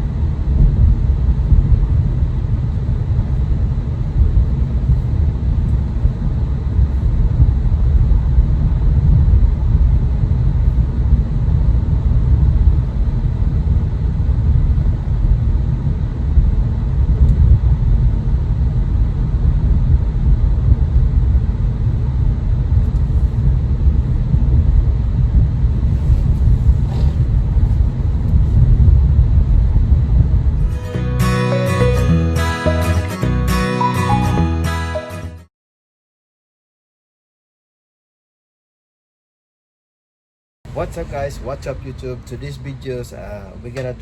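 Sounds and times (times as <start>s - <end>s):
car interior road and engine rumble: 19.0s - 30.6s, 40.7s - 44.0s.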